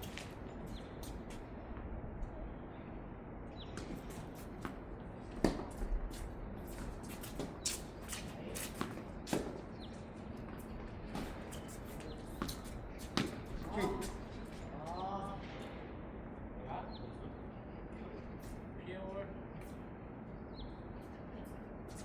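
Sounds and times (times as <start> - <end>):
tennis balls struck and bouncing: 3.7 - 9.7, 10.5 - 14.2.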